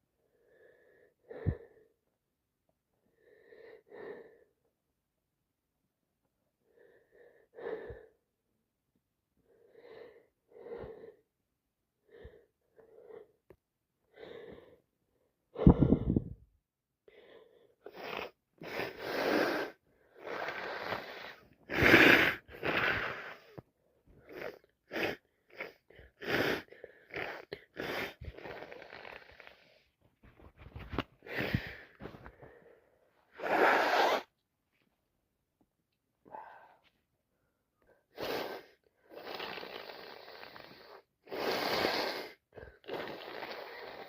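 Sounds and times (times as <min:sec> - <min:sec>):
wheezy gasping breaths: 0:15.5 - 0:16.4, 0:17.1 - 0:34.3, 0:36.3 - 0:44.0.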